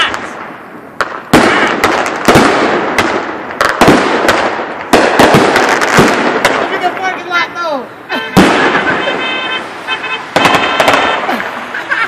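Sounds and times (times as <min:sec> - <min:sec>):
fireworks bangs and crackling: 0:00.0 - 0:12.0.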